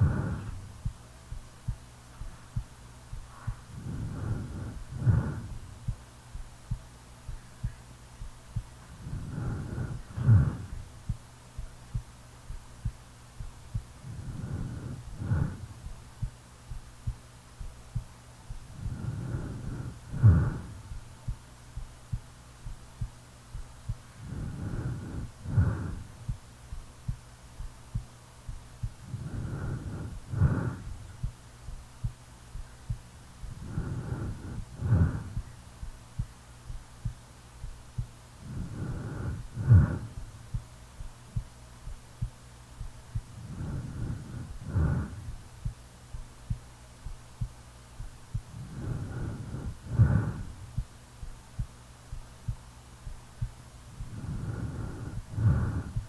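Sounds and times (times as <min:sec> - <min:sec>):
snoring breaths: 0:00.0 - 0:01.0, 0:02.2 - 0:06.0, 0:08.8 - 0:11.2, 0:13.8 - 0:16.8, 0:18.5 - 0:21.4, 0:23.6 - 0:26.4, 0:28.8 - 0:31.4, 0:32.6 - 0:36.0, 0:36.7 - 0:40.6, 0:42.8 - 0:45.8, 0:48.0 - 0:50.9, 0:52.5 - 0:56.0
faint low hum: 0:00.0 - 0:56.0
heartbeat thumping: 0:00.0 - 0:56.0.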